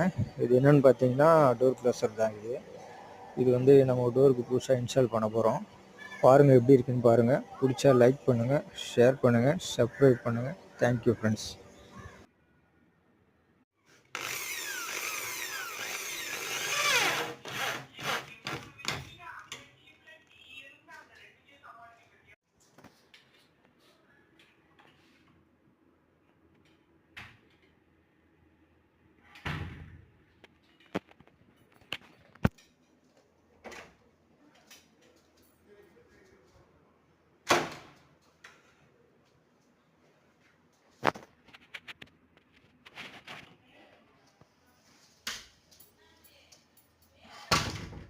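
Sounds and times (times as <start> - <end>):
electric drill whining under load: 14.1 - 18.2.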